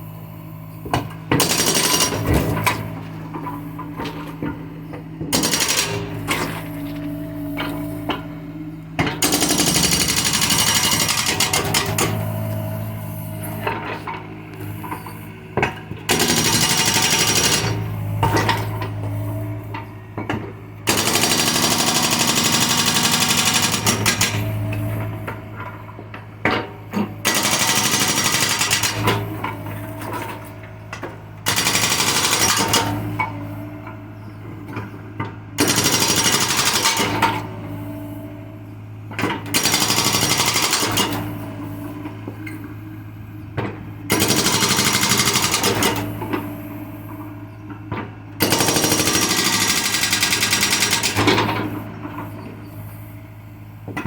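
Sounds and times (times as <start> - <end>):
diesel engine humming: 0.0 - 32.1
hydraulic breaker hammering: 0.9 - 8.3, 9.0 - 12.6, 14.8 - 25.7, 26.4 - 30.4, 35.6 - 37.6, 39.2 - 42.5, 43.6 - 46.4, 48.0 - 51.8.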